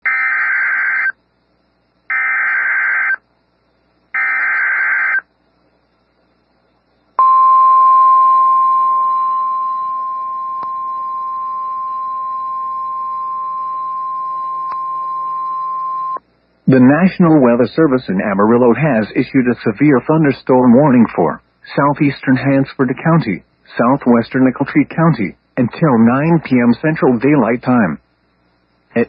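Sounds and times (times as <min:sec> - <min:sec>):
electronic data warble bursts: 0:02.1 - 0:03.2, 0:04.2 - 0:05.3, 0:07.2 - 0:16.2
steady warning alarm tone: 0:02.1 - 0:03.2, 0:04.2 - 0:05.3, 0:07.2 - 0:16.2.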